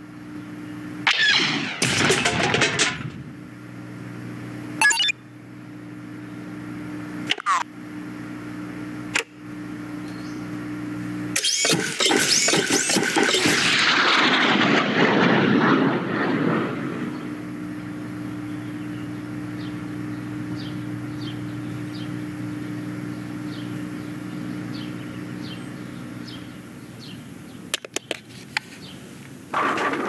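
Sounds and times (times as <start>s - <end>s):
steady low hum: 0.0s - 30.0s
bird chirping: 10.0s - 10.5s, 18.4s - 28.1s
sharp clicks: 11.4s - 14.4s.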